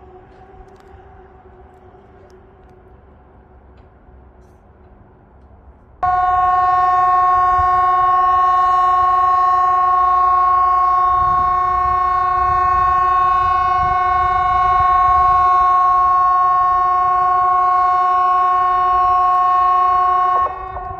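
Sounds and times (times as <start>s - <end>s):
warning siren steady tone: 6.0s - 20.9s.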